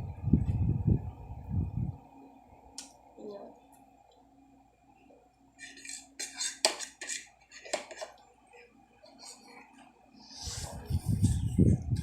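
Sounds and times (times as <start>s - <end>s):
utensils scraping and clinking on dish: 5.6s - 8.2s.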